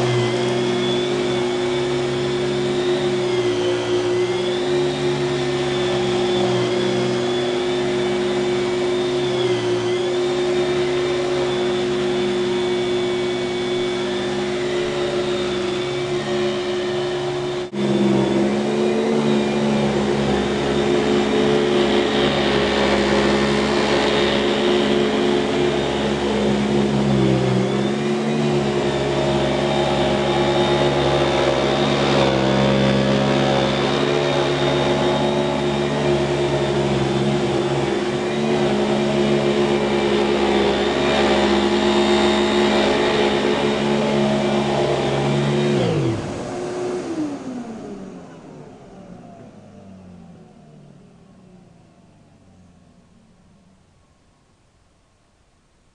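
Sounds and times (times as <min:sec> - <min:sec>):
vacuum cleaner motor whirring: 0:00.0 - 0:54.6.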